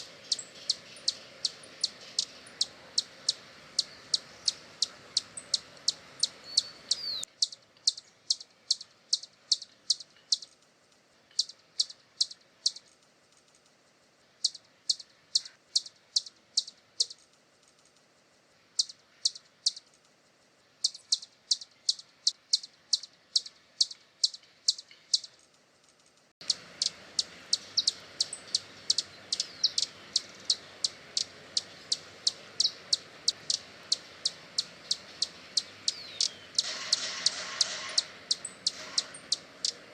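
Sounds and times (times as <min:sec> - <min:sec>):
hummingbird chip notes: 0:00.0 - 0:10.5, 0:26.4 - 0:39.9
background hiss: 0:00.0 - 0:39.9.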